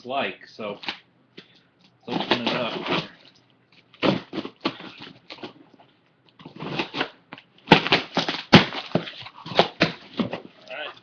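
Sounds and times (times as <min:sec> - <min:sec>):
packaging crackling and snapping: 0:01.9 - 0:05.6, 0:06.3 - 0:11.0
packaging rustling and tearing: 0:02.0 - 0:05.7.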